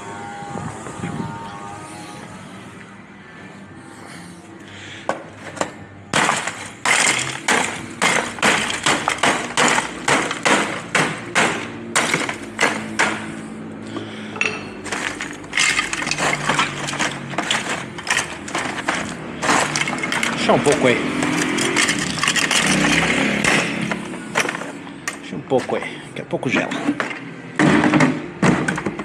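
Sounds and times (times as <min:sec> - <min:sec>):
cans and bottles clinking in ice: 0:06.2 - 0:13.3, 0:14.4 - 0:25.9.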